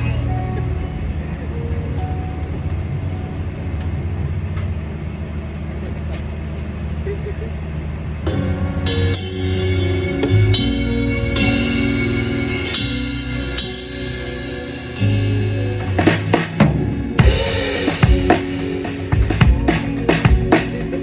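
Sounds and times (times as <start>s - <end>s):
held bass notes: 0.0s - 5.4s, 8.3s - 21.0s
drum kit with cymbal crashes: 14.5s - 21.0s.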